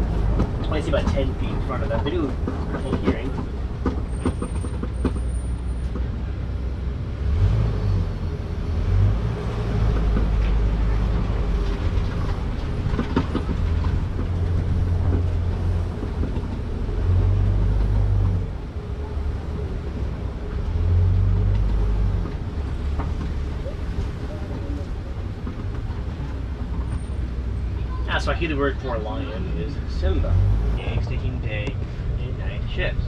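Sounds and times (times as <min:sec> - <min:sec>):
vehicle engine and wheels rumbling: 0:00.0 - 0:33.0.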